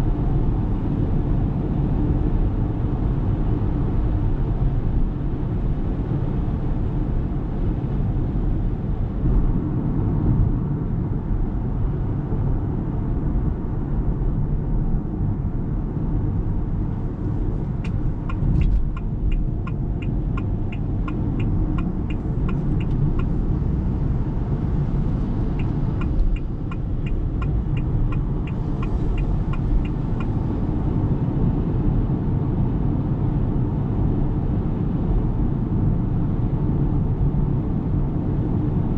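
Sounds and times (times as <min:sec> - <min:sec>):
road and tyre rumble: 0:00.0 - 0:38.9
turn signal ticking: 0:17.5 - 0:30.6.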